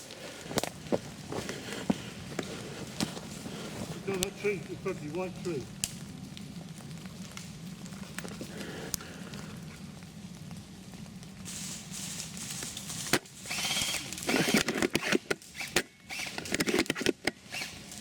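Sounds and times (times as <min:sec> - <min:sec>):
twigs snapping: 0:00.0 - 0:04.4, 0:05.6 - 0:09.8
leaves and twigs rustling: 0:00.0 - 0:16.4.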